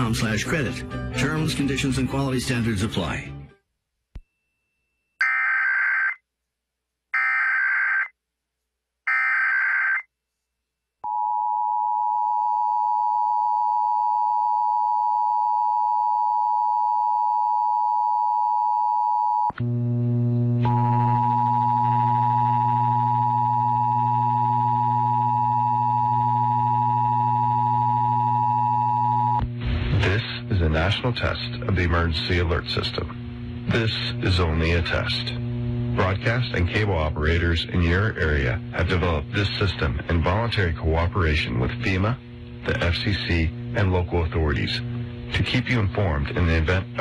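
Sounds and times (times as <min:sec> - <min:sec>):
low hum: 0:19.6 - 0:47.0.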